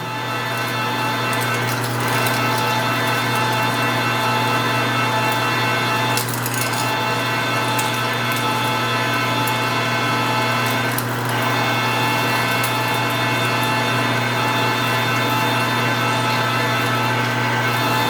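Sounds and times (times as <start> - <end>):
metal lathe motor and gear hum: 0.0 - 18.0.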